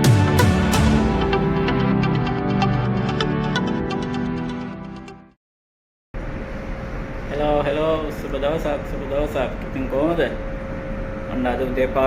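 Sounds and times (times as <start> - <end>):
electronic music with steady beat: 0.0 - 5.1.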